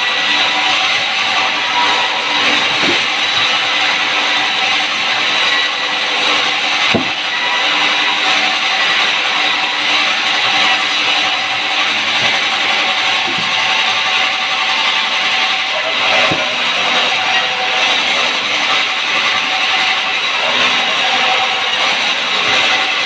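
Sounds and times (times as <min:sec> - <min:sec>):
saw cutting wood: 0:00.0 - 0:23.0
knock: 0:06.9 - 0:07.2.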